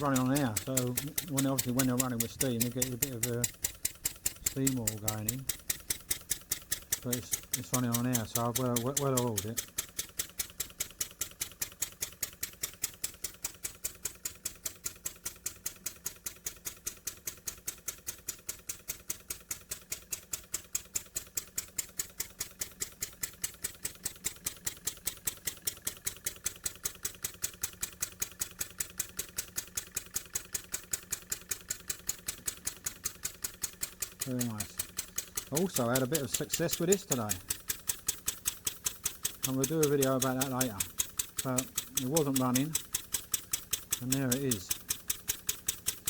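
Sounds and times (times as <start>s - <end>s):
model steam engine beating: 0.0s - 46.0s.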